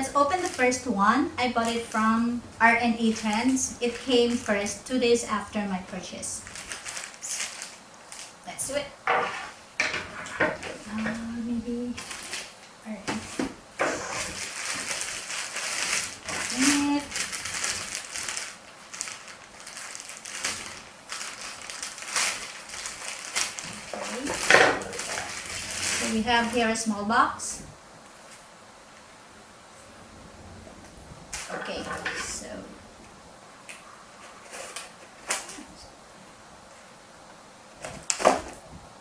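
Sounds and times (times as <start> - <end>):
packaging crinkling and rustling: 0.0 - 2.0, 2.6 - 8.5, 11.9 - 26.9, 33.6 - 35.8.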